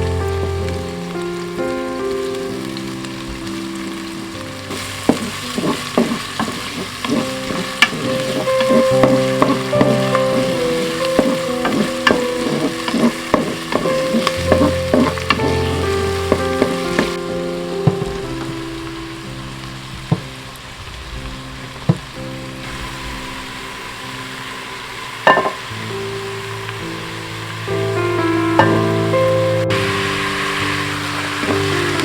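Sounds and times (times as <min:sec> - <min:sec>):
food sizzling: 0:00.0 - 0:32.0
utensil scraping cooking pot: 0:04.7 - 0:17.2, 0:29.8 - 0:32.0.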